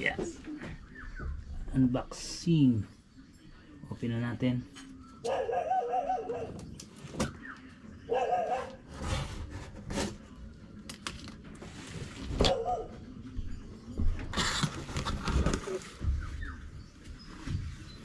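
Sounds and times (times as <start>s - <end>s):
dog wavering calls: 5.2s - 6.6s.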